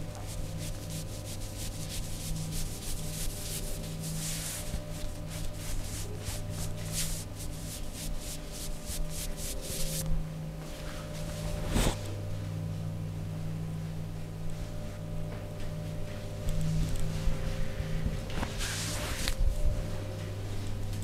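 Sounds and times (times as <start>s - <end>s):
steady low hum: 0.0s - 21.0s
hands rubbing over skin: 0.2s - 10.0s.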